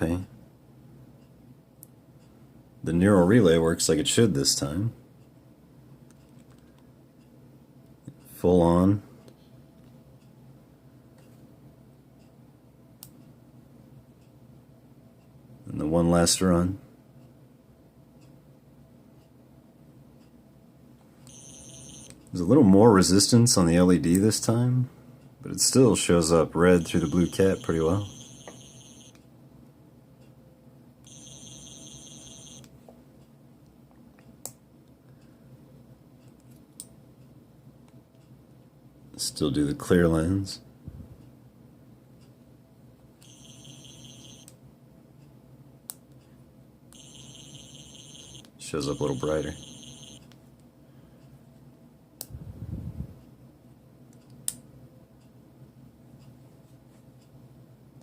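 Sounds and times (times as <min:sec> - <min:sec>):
high-pitched electronic buzz: 0:26.8 - 0:29.2, 0:31.1 - 0:32.7, 0:43.2 - 0:44.5, 0:47.0 - 0:50.2.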